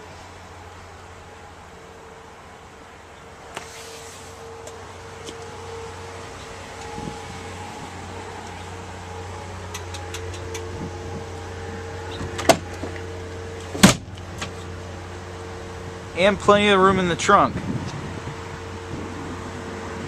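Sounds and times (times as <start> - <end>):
steady low hum: 0.0 - 20.0
heavy thump: 13.7 - 14.6.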